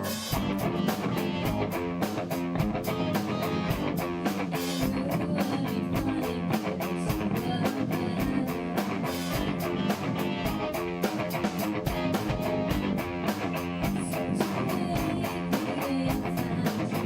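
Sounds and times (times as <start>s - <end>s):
drum beat: 0.0s - 5.1s, 8.2s - 16.0s
bass guitar: 0.0s - 17.0s
electric guitar: 0.0s - 17.0s.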